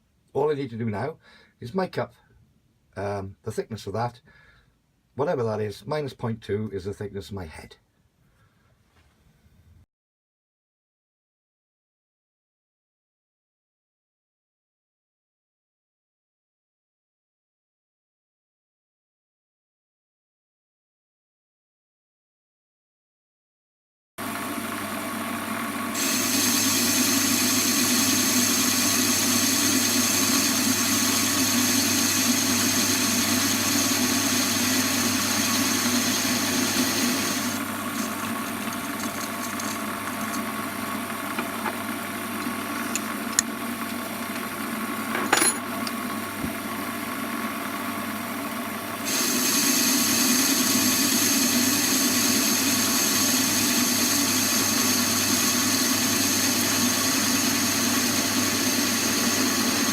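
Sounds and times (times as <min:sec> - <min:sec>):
metal lathe running: 0:24.8 - 0:46.0, 0:49.0 - 0:59.9.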